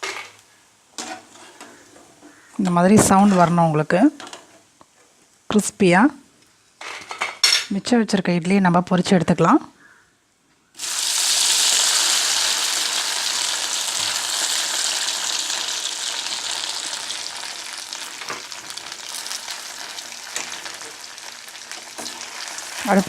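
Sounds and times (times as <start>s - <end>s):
food sizzling in hot oil: 10.8s - 23.0s.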